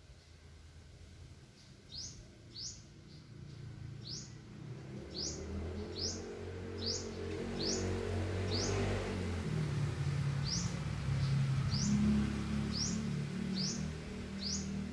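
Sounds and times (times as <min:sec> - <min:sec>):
bird chirping: 0:01.6 - 0:09.2, 0:10.3 - 0:14.9.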